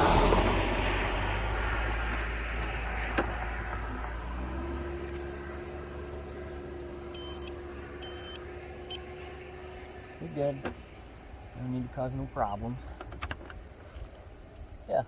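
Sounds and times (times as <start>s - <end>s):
insect buzzing: 0.6s - 15.0s
high electronic beeps: 7.1s - 9.1s.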